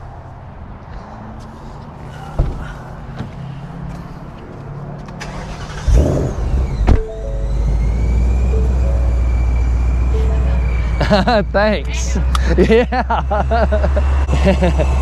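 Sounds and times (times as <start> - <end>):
car engine starting and idling: 5.0 - 12.6.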